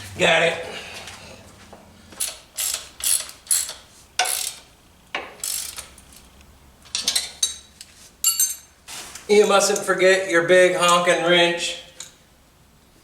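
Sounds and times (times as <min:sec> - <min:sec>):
ratchet wrench clicking: 0:02.2 - 0:04.7, 0:05.4 - 0:06.0.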